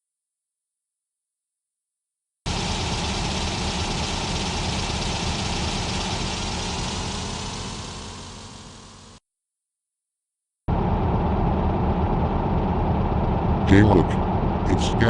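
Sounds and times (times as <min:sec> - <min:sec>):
bus engine running: 0:02.5 - 0:09.2, 0:10.7 - 0:15.0.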